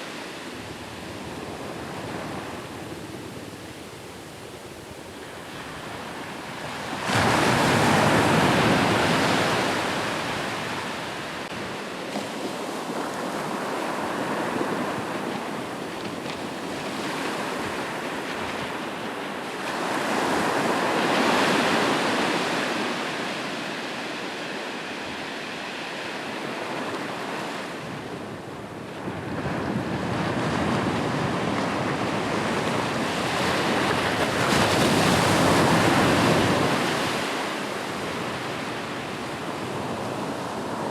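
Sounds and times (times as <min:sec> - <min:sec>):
wind on microphone: 0:26.5 - 0:40.9.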